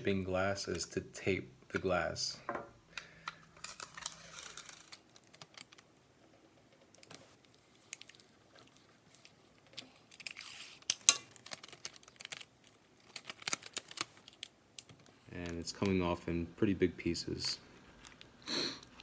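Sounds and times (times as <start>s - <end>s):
cracked glass crackling: 3.6s - 5.8s, 10.0s - 15.0s.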